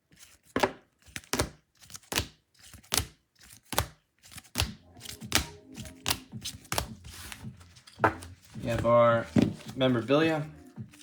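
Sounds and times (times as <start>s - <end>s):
cards rustling and clicking: 0.1s - 11.0s
trading cards tapping on table: 4.6s - 9.7s.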